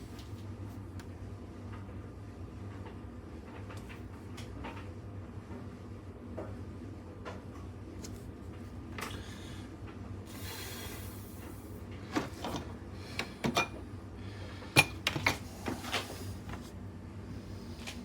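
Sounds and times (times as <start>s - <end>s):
steady low hum: 5.4s - 18.0s.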